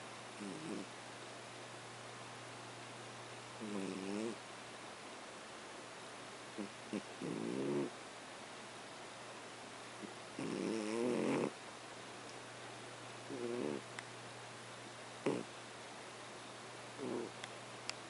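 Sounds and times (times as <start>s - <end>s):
cat snoring: 0.4s - 0.9s, 3.6s - 4.4s, 6.6s - 7.9s, 10.0s - 11.6s, 13.3s - 13.8s, 15.2s - 15.5s, 17.0s - 17.4s.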